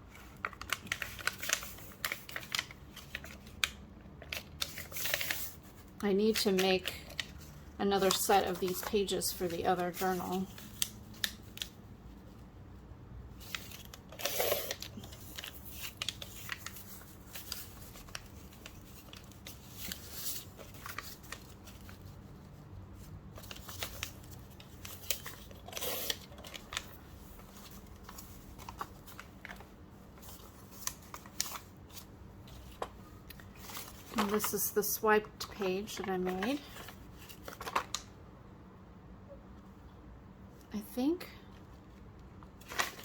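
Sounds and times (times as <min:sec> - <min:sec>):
paper rustling: 0:00.1 - 0:12.3, 0:13.4 - 0:38.1, 0:42.6 - 0:43.0.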